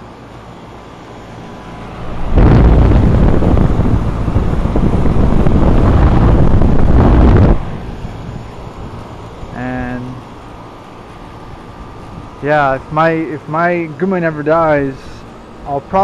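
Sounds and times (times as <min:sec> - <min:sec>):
air conditioner humming: 0:00.0 - 0:16.0
wind buffeting microphone: 0:01.3 - 0:12.9.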